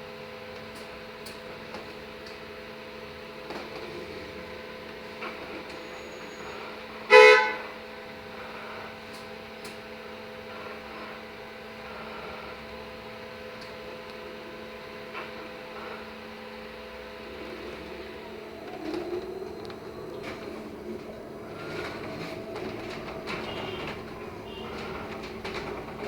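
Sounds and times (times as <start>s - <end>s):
electric bus hum: 0.0s - 26.0s
vehicle horn honk: 7.1s - 7.8s, 23.5s - 24.8s.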